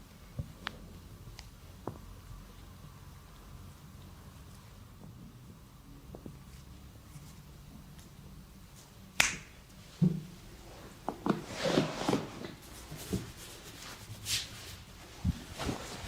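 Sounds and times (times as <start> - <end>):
hand snap: 9.2 - 9.6.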